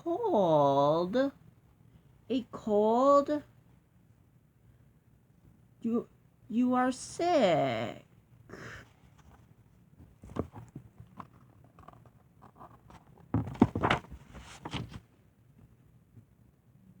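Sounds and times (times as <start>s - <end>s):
paper pages turning: 10.3s - 15.0s.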